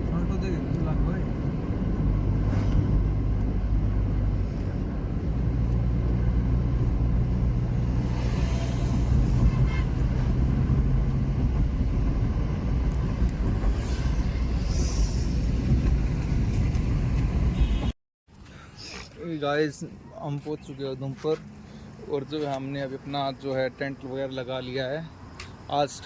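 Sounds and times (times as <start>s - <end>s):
car engine hum: 0.0s - 14.7s
road rumble: 0.0s - 26.0s.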